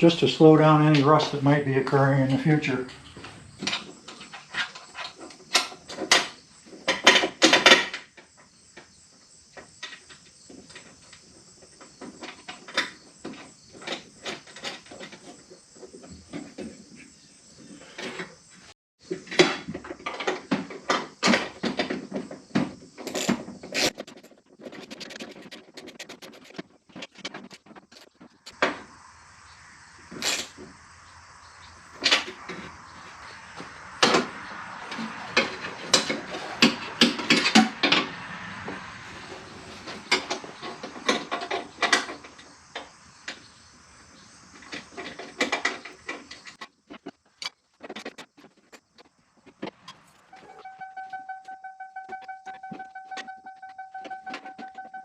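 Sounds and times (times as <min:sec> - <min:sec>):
tools clicking and knocking: 0:19.2 - 0:28.6.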